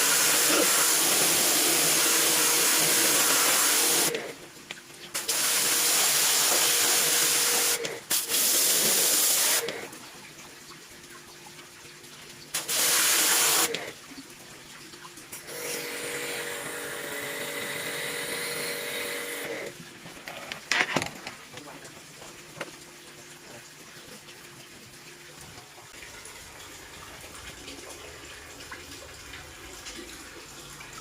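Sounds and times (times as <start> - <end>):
pump motor hum: 0.0 - 10.7, 12.5 - 31.0.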